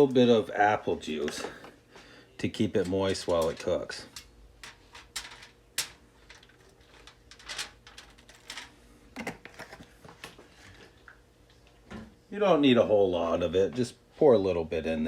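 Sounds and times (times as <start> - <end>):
foil crinkling and clicks: 2.8 - 10.4.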